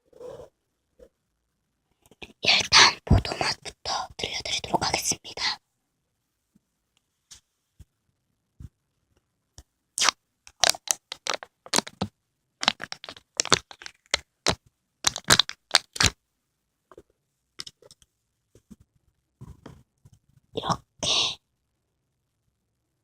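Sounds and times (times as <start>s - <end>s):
plastic packaging crinkling: 10.0s - 16.2s.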